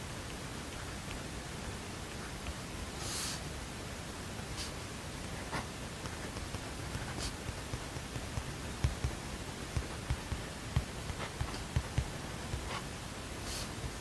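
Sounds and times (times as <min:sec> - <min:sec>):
room noise hiss: 0:00.0 - 0:14.0
soft knocks and ticks on desk: 0:06.0 - 0:12.7.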